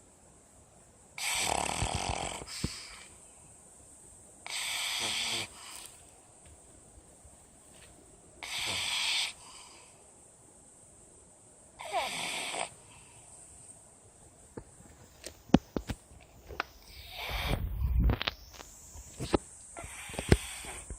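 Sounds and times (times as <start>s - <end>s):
dog snoring: 1.2s - 3.1s, 4.5s - 5.9s, 8.4s - 9.8s, 11.8s - 12.8s, 16.9s - 17.7s, 19.8s - 20.9s.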